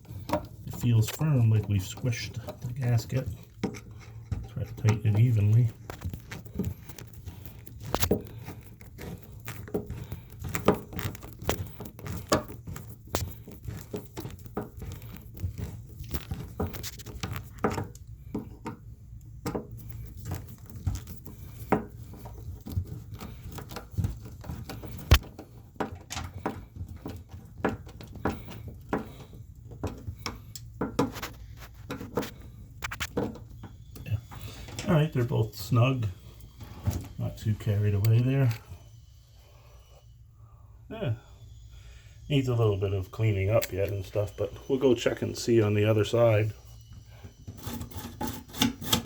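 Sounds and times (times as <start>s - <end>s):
metallic clicks and scrapes: 47.4s - 49.0s.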